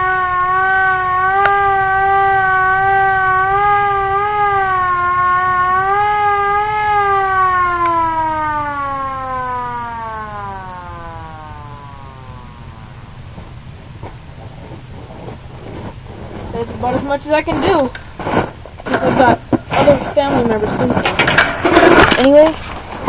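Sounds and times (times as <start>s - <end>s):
hand-cranked air raid siren: 0.0s - 13.7s.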